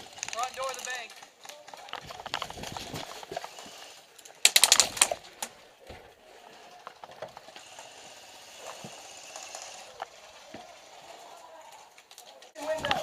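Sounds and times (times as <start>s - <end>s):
airsoft gun firing burst: 4.4s - 5.2s.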